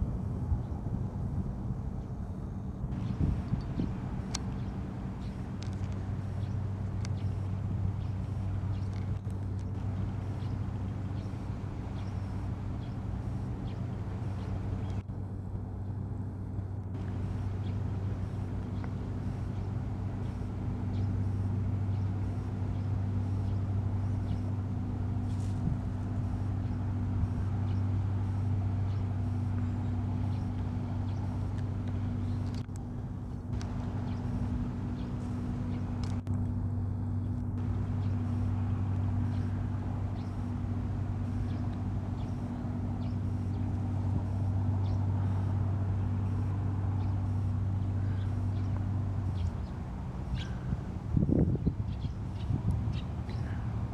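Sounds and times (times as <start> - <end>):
low engine hum: 0.0 - 53.9.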